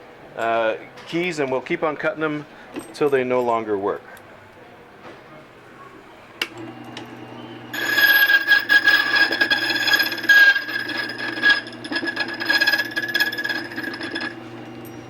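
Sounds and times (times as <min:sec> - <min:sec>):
machine motor hum: 0:06.5 - 0:15.0
key cutter whining and scraping: 0:06.6 - 0:15.0.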